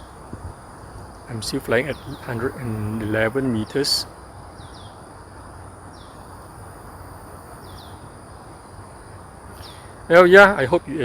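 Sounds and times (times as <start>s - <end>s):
high-pitched insect drone: 0.0s - 4.0s
bird chirping: 1.1s - 5.1s, 5.9s - 10.2s.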